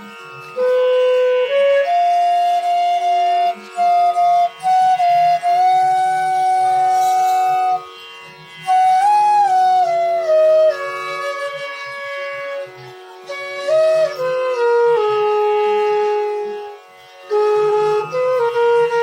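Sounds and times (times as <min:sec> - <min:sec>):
bamboo flute melody: 0:00.0 - 0:19.0.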